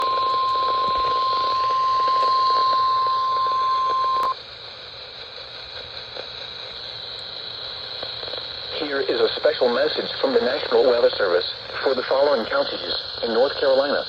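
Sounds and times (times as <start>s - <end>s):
steady warning alarm tone: 0.0s - 4.4s
radio channel hiss: 0.0s - 14.0s.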